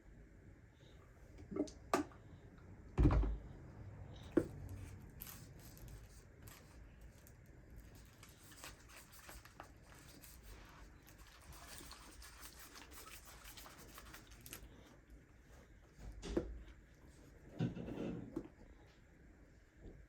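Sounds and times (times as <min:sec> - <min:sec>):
thud: 0:03.0 - 0:03.4.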